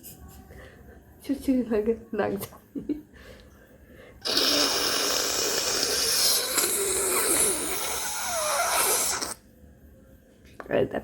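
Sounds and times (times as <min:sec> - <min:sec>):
person blowing nose: 0:04.2 - 0:09.4.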